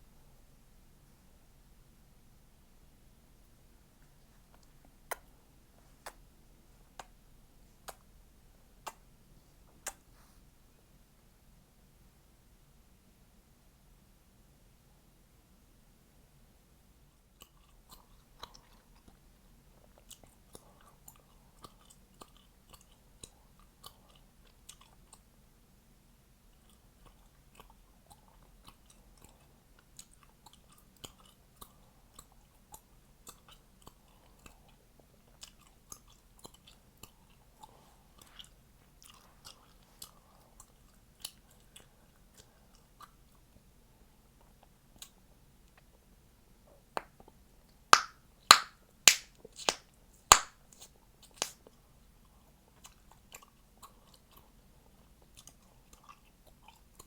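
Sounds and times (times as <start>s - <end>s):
wet mouth sounds: 5.9s - 6.2s, 6.9s - 8.1s, 8.8s - 9.0s, 9.8s - 10.1s, 48.0s - 51.8s
chewing gum snapping: 7.0s - 7.2s, 7.8s - 8.1s, 8.8s - 9.0s, 9.8s - 10.0s, 26.6s - 43.2s, 48.0s - 51.8s.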